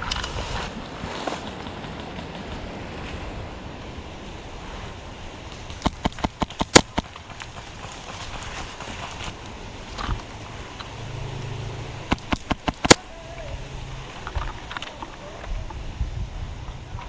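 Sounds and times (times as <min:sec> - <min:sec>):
rustle: 0:00.0 - 0:17.0
wind noise: 0:00.0 - 0:17.0
airsoft gun shots: 0:05.8 - 0:07.1.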